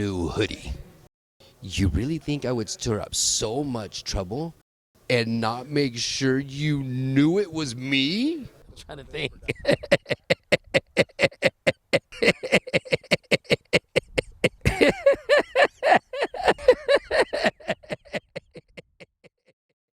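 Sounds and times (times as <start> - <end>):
man laughing maniacally: 9.4 - 19.5.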